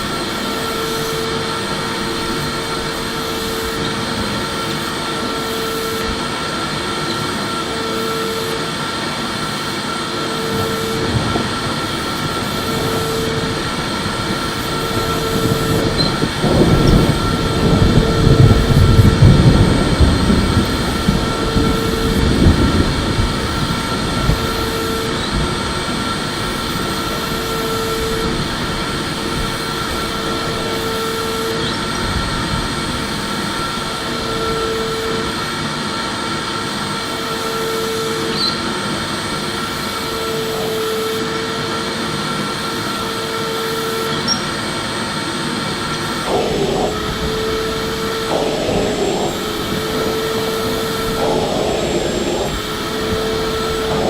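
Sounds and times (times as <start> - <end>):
vacuum cleaner running: 0.0 - 54.0
low rumble: 46.2 - 54.0
short mid-pitched hum: 46.2 - 54.0.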